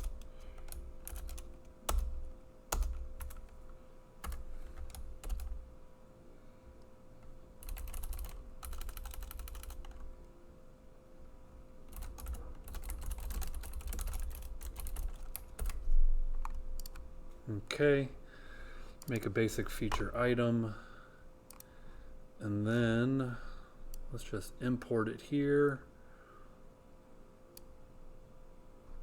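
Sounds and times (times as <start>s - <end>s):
typing on computer keyboard: 0.0s - 3.6s, 4.2s - 5.7s, 7.6s - 10.1s, 11.9s - 15.8s, 16.4s - 17.0s
faint steady hum: 0.0s - 29.0s.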